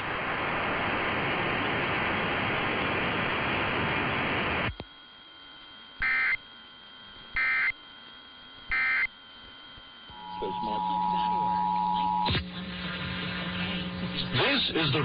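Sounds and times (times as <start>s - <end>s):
screeching digital data bursts: 6.0s - 6.5s, 7.4s - 7.8s, 8.7s - 9.2s, 10.1s - 12.3s.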